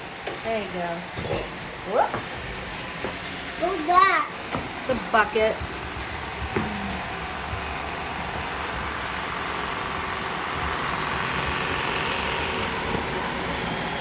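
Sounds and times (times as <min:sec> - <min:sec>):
robot vacuum motor whir: 0:04.7 - 0:14.0.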